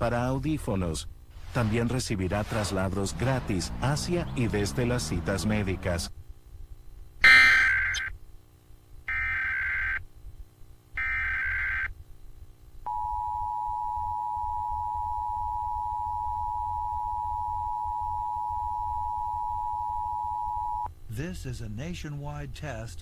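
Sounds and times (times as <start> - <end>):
digital data screeches: 7.2 - 8.1
two-tone alert tone: 7.2 - 8.1.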